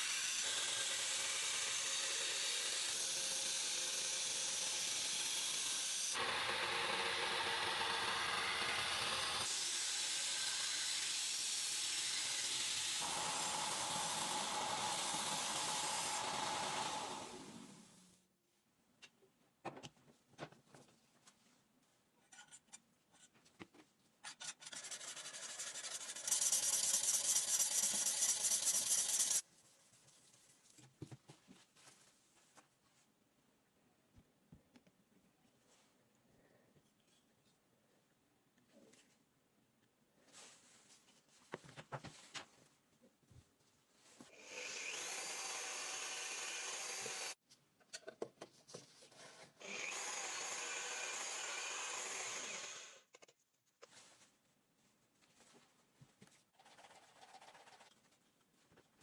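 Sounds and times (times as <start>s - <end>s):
sanding on a metal blade: 24.6s - 29.4s
power tool hissing: 44.4s - 47.4s.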